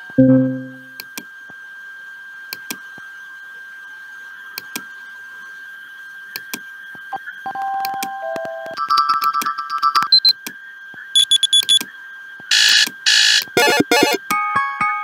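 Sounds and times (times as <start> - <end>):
alarm tone beeps: 0.0 - 1.0, 11.2 - 11.8, 12.5 - 14.2
high-pitched electronic whine: 0.0 - 1.0, 7.2 - 14.2
low synthesized tone: 0.0 - 1.0.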